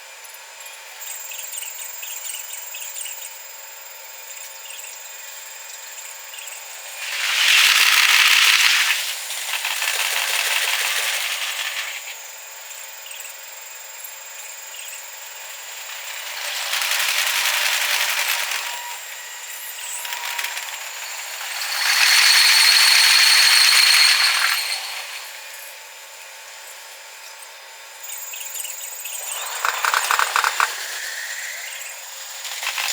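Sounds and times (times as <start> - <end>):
train wheels clattering on rails: 15.5 - 19.0, 29.2 - 31.8.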